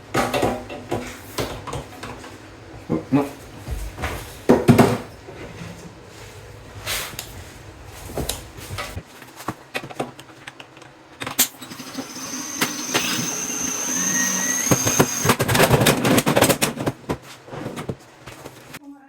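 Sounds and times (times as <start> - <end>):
small motor whining: 11.4 - 15.5.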